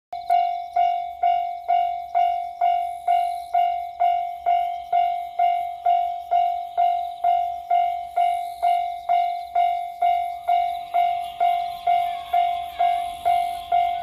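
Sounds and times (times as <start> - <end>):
level crossing warning bell ringing: 0.2 - 14.0.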